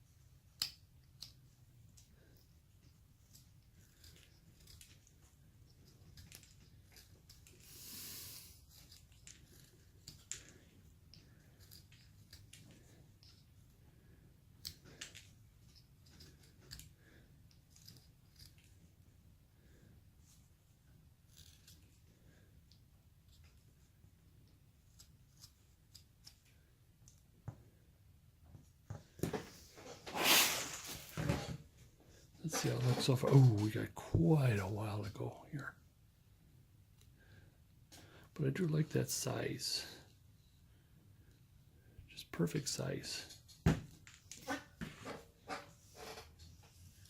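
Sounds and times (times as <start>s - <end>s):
knife whittling wood: 29.8s - 31.2s.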